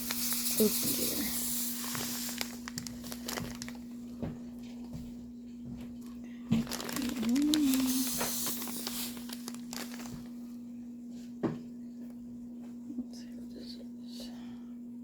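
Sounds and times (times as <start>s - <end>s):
bead-filled bag crinkling: 0.0s - 3.8s, 6.5s - 10.3s
low electrical hum: 0.0s - 15.0s.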